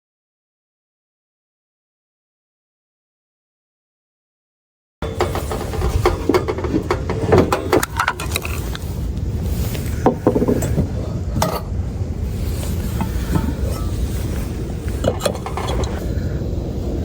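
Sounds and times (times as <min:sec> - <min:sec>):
pots and utensils clinking: 0:05.0 - 0:09.0, 0:10.0 - 0:11.8, 0:12.4 - 0:16.0
steady low rumble: 0:05.0 - 0:17.0.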